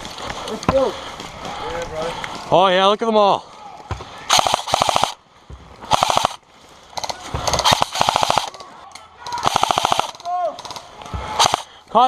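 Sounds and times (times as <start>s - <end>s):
airsoft guns firing bursts: 4.3s - 5.2s, 5.8s - 12.0s.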